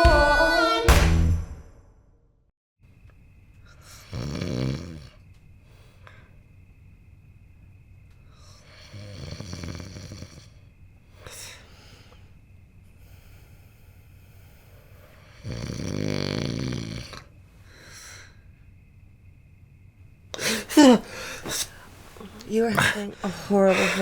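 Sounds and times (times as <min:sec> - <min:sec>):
person snoring: 0:04.0 - 0:05.1, 0:08.8 - 0:10.6, 0:15.3 - 0:17.2
soft breathing: 0:11.1 - 0:15.3, 0:20.4 - 0:24.0.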